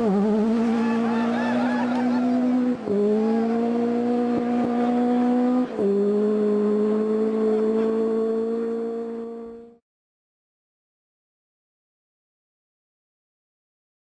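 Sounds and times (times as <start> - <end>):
rally car engine revving: 0.0 - 9.8.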